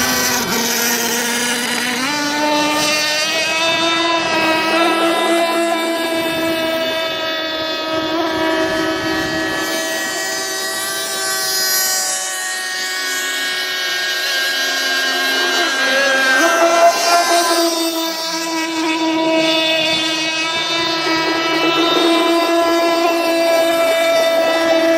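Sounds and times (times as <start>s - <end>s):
model boat motor whining: 0.0s - 24.9s.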